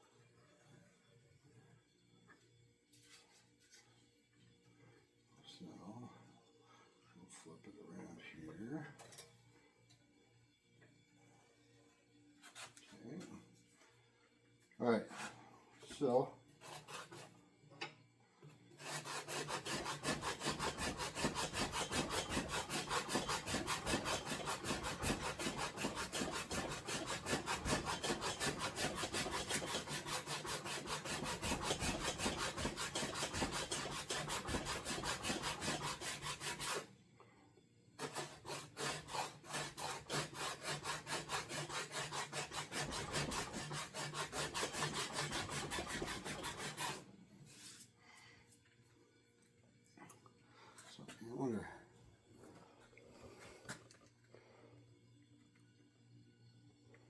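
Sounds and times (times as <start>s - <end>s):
rasp scraping wood: 16.6s - 17.3s, 18.8s - 36.9s, 38.0s - 47.8s.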